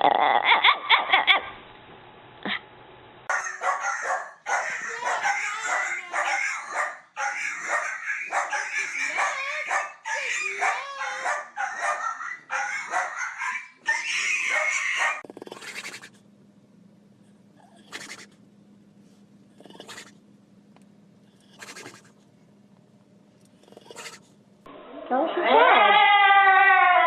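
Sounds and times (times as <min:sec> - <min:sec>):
dog barking and yelping: 0:00.4 - 0:01.5, 0:03.3 - 0:16.0.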